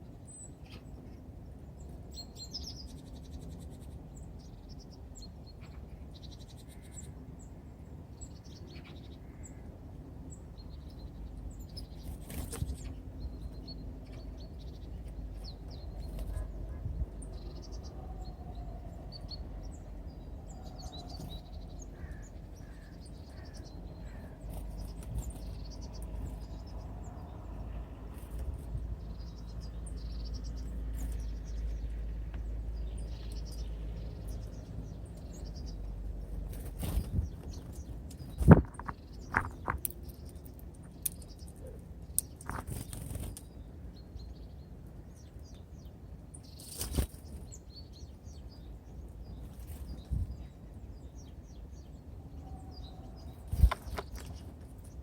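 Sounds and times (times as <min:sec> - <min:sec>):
songbirds chirping: 0:00.0 - 0:55.0
bird wingbeats: 0:11.8 - 0:13.0, 0:36.2 - 0:39.8, 0:42.4 - 0:43.5, 0:46.6 - 0:47.5, 0:53.3 - 0:55.0.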